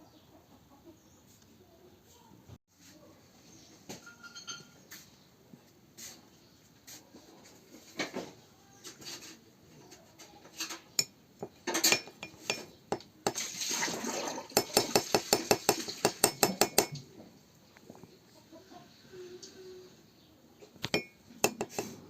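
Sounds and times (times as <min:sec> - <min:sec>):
spoon scraping glass: 0:10.6 - 0:17.0, 0:20.8 - 0:22.0
metal spoon clinking on glass: 0:11.0 - 0:13.4, 0:14.6 - 0:17.0, 0:20.8 - 0:22.0.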